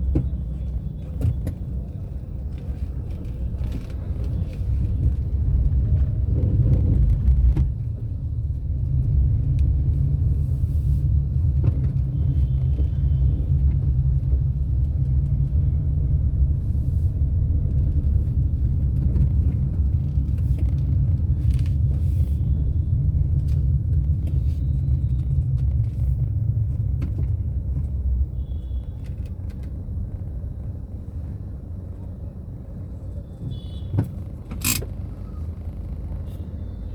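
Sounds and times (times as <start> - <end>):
car road and engine rumble: 0.0 - 36.9.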